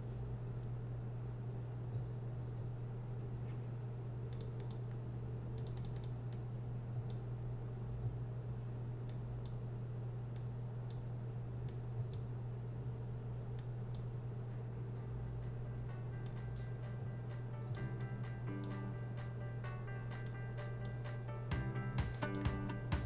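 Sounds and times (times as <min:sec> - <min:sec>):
steady low hum: 0:00.0 - 0:23.0
computer keys clicking: 0:04.3 - 0:05.0, 0:05.6 - 0:06.4, 0:22.1 - 0:22.5.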